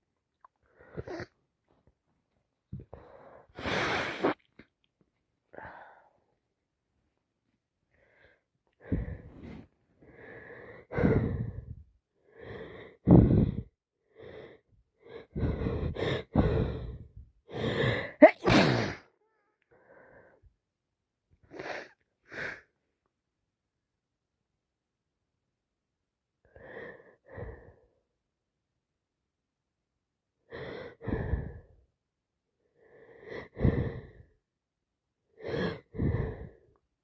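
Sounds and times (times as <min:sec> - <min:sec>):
woman breathing: 0:02.8 - 0:04.5, 0:05.5 - 0:06.3, 0:07.9 - 0:18.3, 0:30.5 - 0:31.8, 0:32.7 - 0:34.4, 0:35.4 - 0:36.8
woman sneezing loudly: 0:18.2 - 0:19.1.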